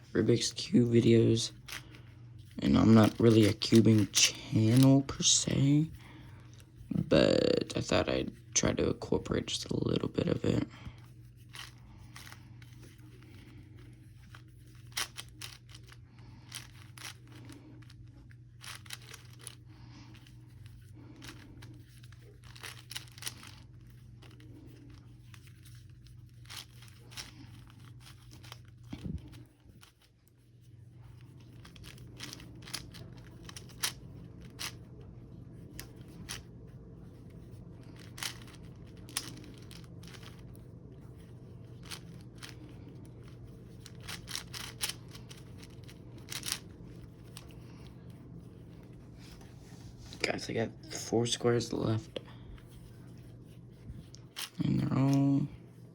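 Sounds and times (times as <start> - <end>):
low hum: 0.0 - 55.9
puzzle cube clicking and scraping: 0.2 - 6.1, 11.4 - 30.2, 31.1 - 48.1.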